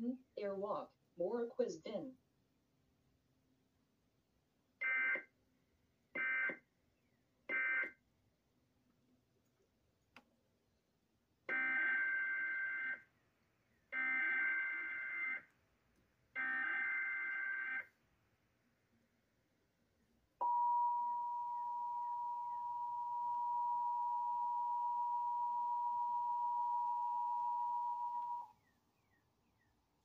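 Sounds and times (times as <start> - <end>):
steady attention tone: 20.4 - 28.6.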